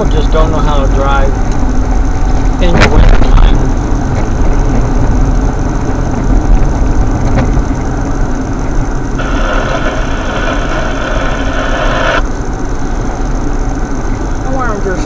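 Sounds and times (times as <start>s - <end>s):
car road and engine rumble: 0.0s - 15.0s
steady hiss: 9.2s - 12.2s.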